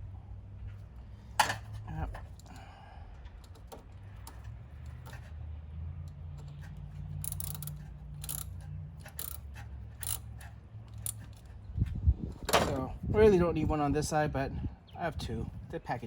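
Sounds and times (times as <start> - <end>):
light metallic clicks and scrapes: 0.6 - 12.8.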